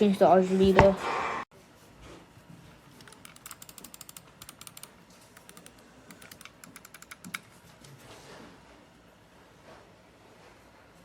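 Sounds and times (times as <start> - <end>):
computer keyboard typing: 3.0 - 7.5.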